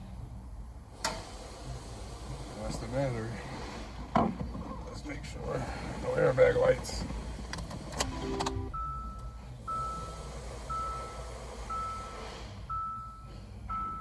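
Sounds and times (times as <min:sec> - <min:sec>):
warning chime beeping: 0:08.0 - 0:10.1
short low chime: 0:08.1 - 0:10.0.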